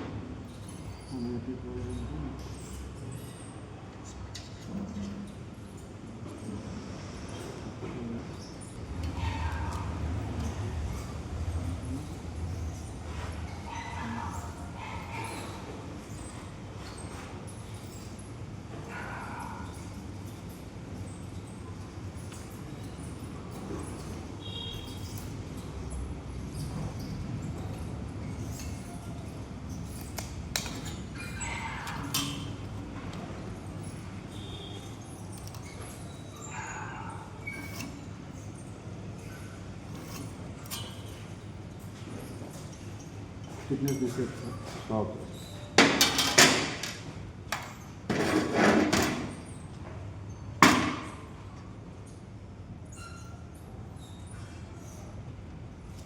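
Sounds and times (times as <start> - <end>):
clattering and scraping: 45.8 - 49.5.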